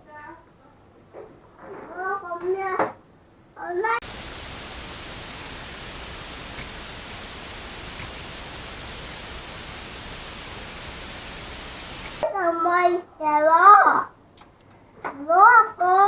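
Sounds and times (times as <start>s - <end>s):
static hiss: 4.0s - 12.2s.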